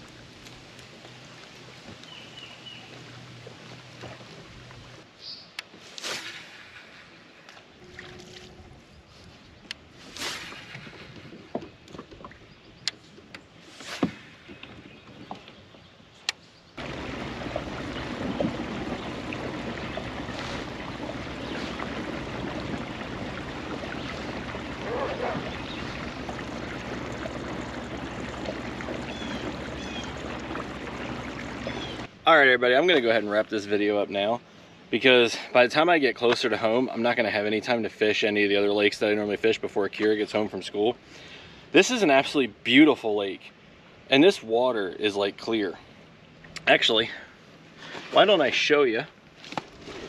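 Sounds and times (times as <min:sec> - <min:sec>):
water lapping around kayak: 0:00.0 - 0:32.2, 0:45.4 - 0:50.0.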